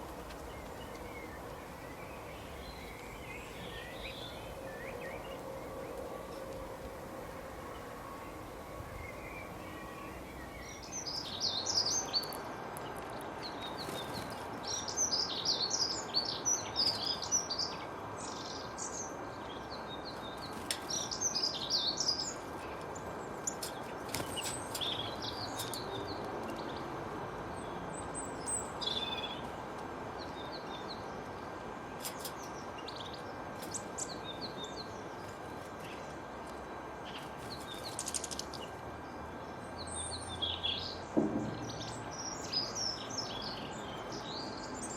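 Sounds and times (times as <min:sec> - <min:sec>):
background hiss: 0:00.0 - 0:12.7
songbirds chirping: 0:00.0 - 0:44.9.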